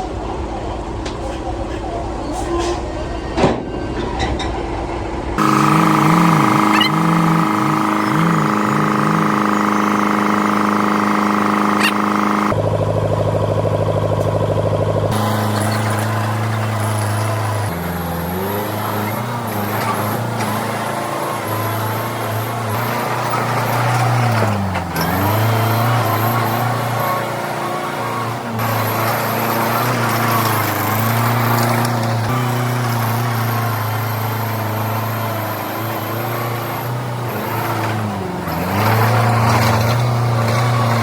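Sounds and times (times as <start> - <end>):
heavy construction machinery engines: 0.0 - 41.0.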